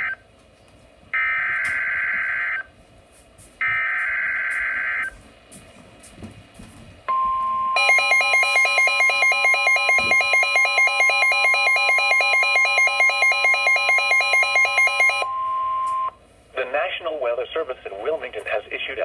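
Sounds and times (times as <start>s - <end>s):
steady high tone: 7.1s - 16.2s
warbling two-pitch alarm: 7.1s - 16.2s.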